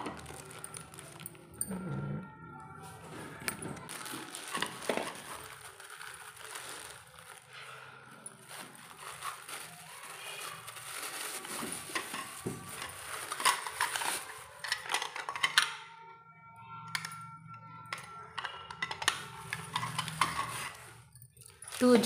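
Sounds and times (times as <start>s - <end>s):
packaging rustling: 0.0s - 1.6s, 3.4s - 15.5s, 18.8s - 22.0s
jars and lids clinking: 3.5s - 6.9s, 10.7s - 15.8s, 17.9s - 22.0s.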